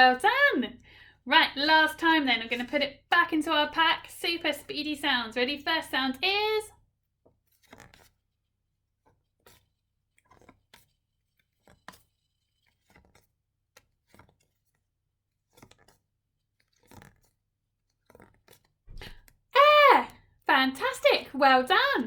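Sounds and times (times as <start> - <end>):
flashcards clicking and rustling: 7.4 - 8.2, 9.0 - 19.4.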